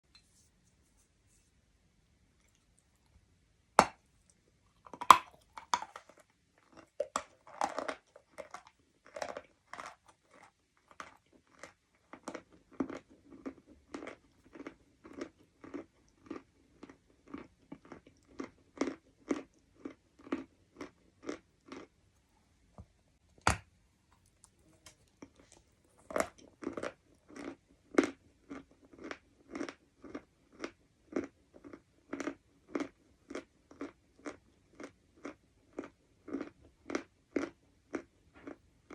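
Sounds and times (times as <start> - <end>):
crunchy chewing: 3.8 - 22.0, 24.1 - 38.9.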